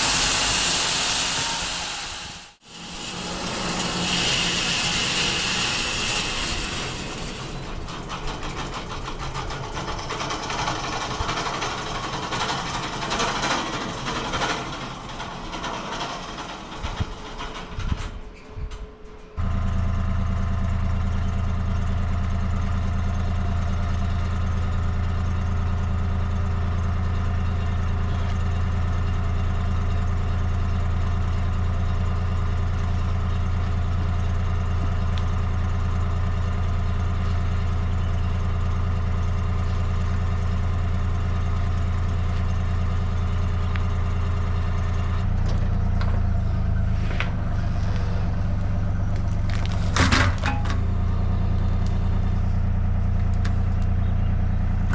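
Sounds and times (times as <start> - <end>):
bandsaw sawmill motor drone: 0.0 - 18.2, 19.4 - 54.9
ticks and scrapes: 46.9 - 52.4.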